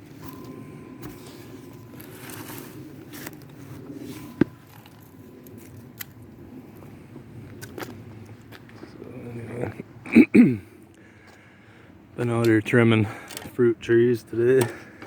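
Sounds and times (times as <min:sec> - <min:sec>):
faint steady ringing tone: 0:00.0 - 0:07.4
low steady rumble: 0:00.0 - 0:15.0.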